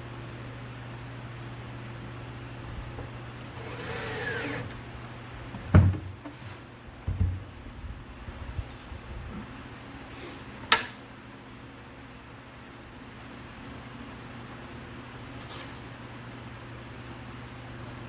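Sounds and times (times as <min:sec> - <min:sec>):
electric drill whining: 0:03.5 - 0:04.8
wooden knocks and thuds: 0:05.5 - 0:06.2, 0:07.0 - 0:07.5.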